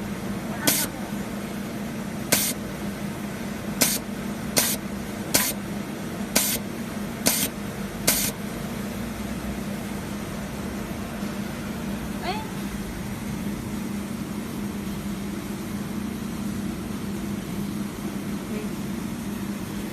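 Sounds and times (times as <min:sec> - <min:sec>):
machine steady hum: 0:00.0 - 0:19.9
laser welder sharp pops: 0:00.7 - 0:00.9, 0:02.3 - 0:02.6, 0:03.8 - 0:05.6, 0:06.4 - 0:06.6, 0:07.2 - 0:08.4.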